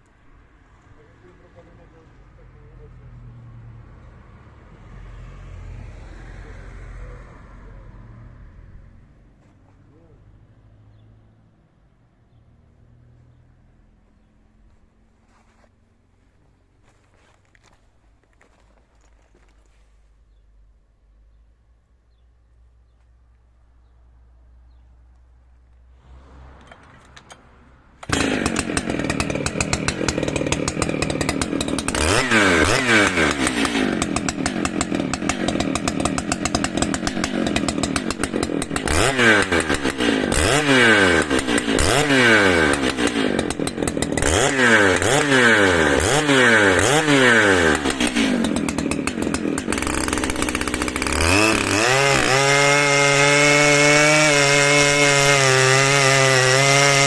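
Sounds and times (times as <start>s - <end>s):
chainsaw engine revving: 28.0s - 57.0s.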